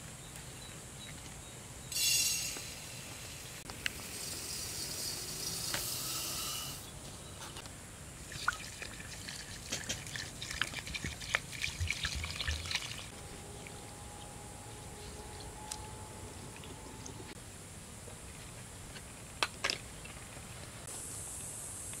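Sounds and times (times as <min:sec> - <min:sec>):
liquid pouring: 0:08.3 - 0:13.1
small splashes and drips: 0:08.3 - 0:13.1.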